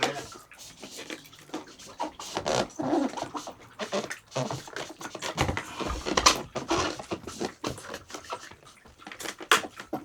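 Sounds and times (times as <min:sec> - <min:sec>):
objects rustling and knocking: 0:04.4 - 0:08.3.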